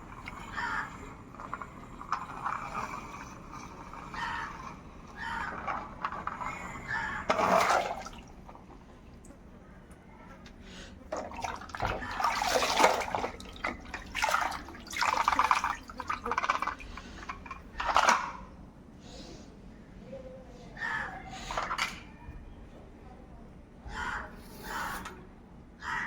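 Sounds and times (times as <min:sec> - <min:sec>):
water splashing and pouring: 0:01.4 - 0:08.9, 0:11.1 - 0:16.9.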